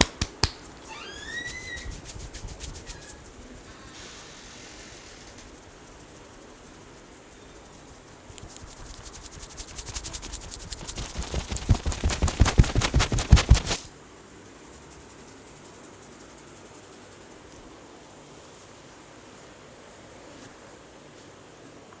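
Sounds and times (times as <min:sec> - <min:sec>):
hand slaps and taps on head: 0:00.0 - 0:00.8.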